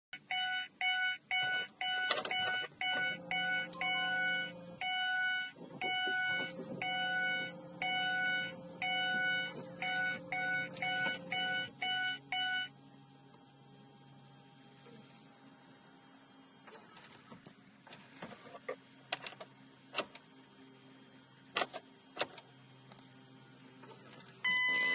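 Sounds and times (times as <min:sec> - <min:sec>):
car warning chime beeping: 0:00.2 - 0:12.7, 0:24.5 - 0:24.9
low steady hum: 0:00.2 - 0:24.9.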